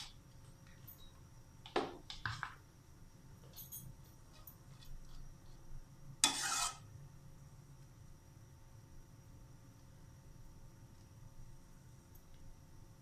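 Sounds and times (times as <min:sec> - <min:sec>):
utensil scraping pot: 0:06.2 - 0:06.9.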